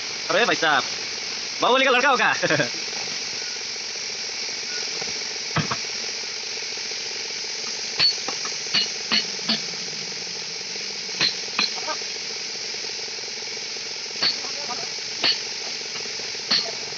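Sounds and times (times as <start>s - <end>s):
steady hiss: 0.0s - 16.9s.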